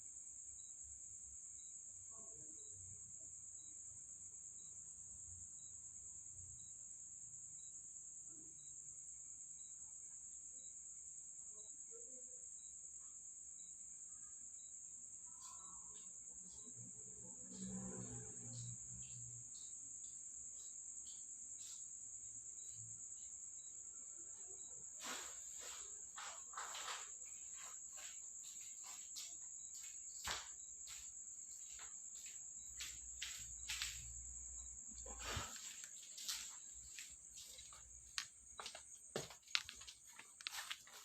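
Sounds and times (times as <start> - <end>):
crickets trilling: 0.0 - 41.0
faint clicks and knocks: 37.6 - 41.0.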